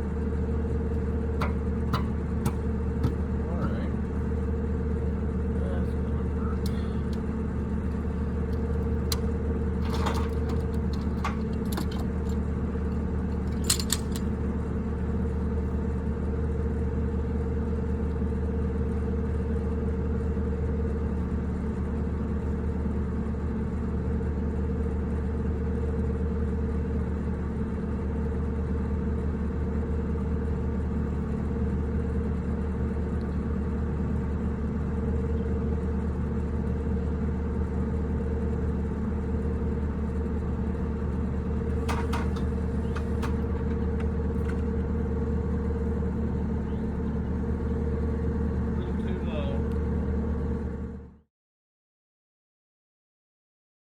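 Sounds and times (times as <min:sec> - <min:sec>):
engine running: 0:00.0 - 0:19.6, 0:30.2 - 0:51.2
light rattle: 0:01.4 - 0:04.4, 0:06.6 - 0:14.4, 0:41.6 - 0:44.6.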